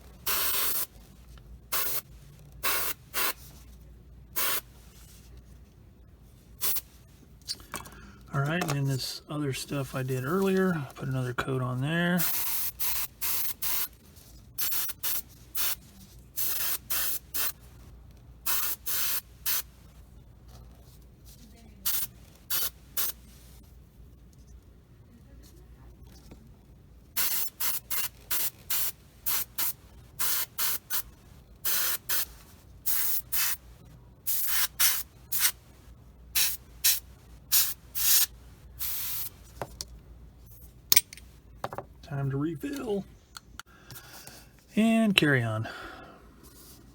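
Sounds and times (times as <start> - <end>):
airbrush spraying paint: 0.2 - 0.9, 1.7 - 3.4, 4.4 - 4.7, 6.6 - 6.9, 12.2 - 13.9, 14.6 - 17.6, 18.5 - 19.7, 21.8 - 23.2, 27.2 - 33.6, 34.3 - 35.6, 36.4 - 39.4.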